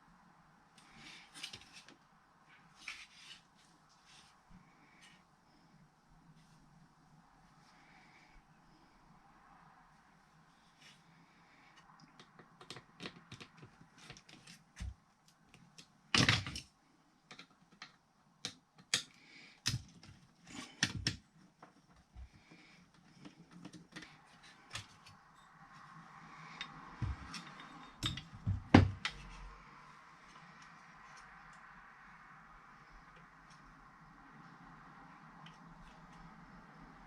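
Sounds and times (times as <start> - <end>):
hand tools clicking and tapping: 12.0 - 14.4, 26.5 - 29.4.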